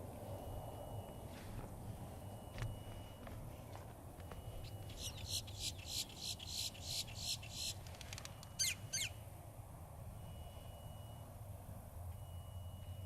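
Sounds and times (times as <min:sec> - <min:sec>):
bird raspy calls: 0:04.6 - 0:07.8, 0:08.6 - 0:09.2.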